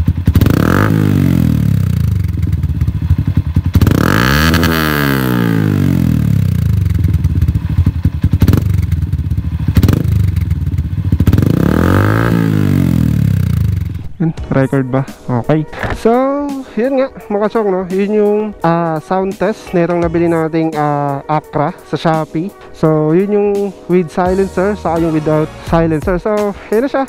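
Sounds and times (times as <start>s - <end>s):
motorcycle engine revving: 0.0s - 14.2s
exhaust cracks: 0.0s - 14.6s.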